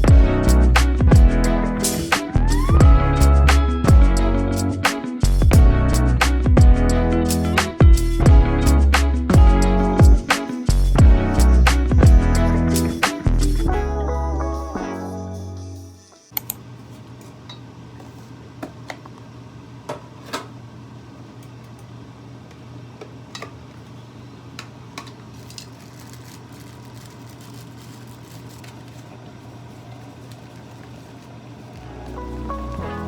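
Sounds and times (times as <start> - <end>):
low hum: 0.0 - 7.3.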